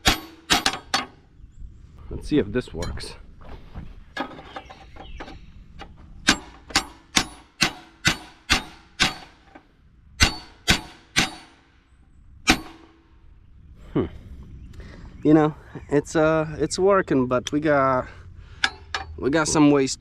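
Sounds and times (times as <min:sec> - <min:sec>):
hammer striking steel frame: 0:00.0 - 0:01.2, 0:06.2 - 0:09.6, 0:10.2 - 0:11.7, 0:12.4 - 0:13.0, 0:18.6 - 0:19.2.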